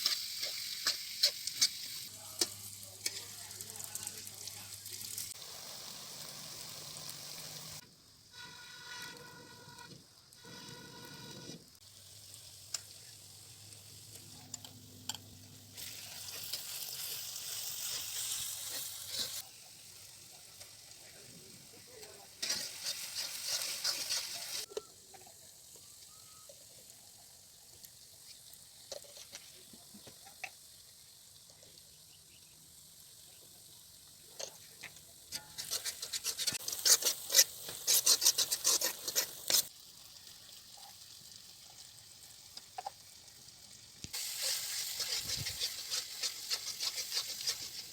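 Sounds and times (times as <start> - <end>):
chicken sizzling in a pan: 0.0 - 47.9
scraping clicks in pan: 44.4 - 47.9.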